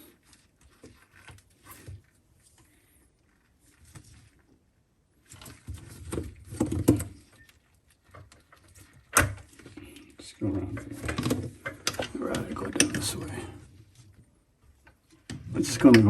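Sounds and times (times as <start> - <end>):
plastic parts knocking and rustling: 5.2 - 16.0.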